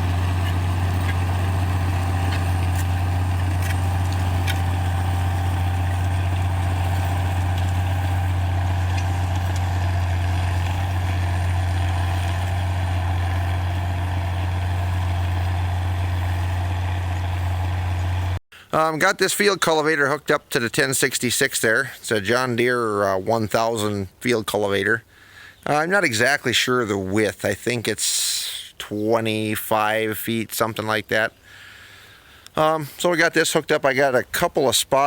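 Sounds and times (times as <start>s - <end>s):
tractor engine humming: 0.0s - 18.4s.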